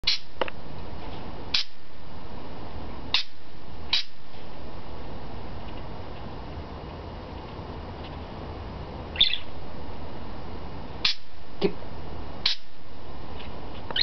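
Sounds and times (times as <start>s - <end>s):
budgerigar chirping: 0.0s - 0.3s, 3.1s - 4.2s, 9.1s - 9.6s, 11.0s - 11.3s, 12.4s - 12.7s
steady background hiss: 0.0s - 14.0s.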